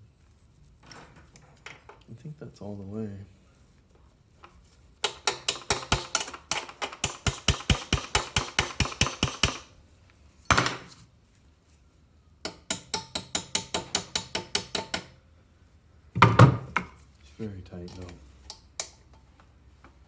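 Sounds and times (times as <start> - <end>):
small hammer tapping on metal: 5.0 - 9.6, 12.4 - 15.2.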